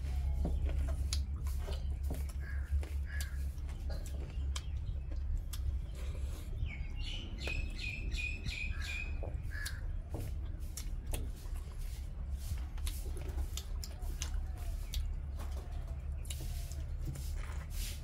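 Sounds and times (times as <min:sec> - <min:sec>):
birds chirping: 0:00.0 - 0:17.0
steady low hum: 0:00.0 - 0:18.0.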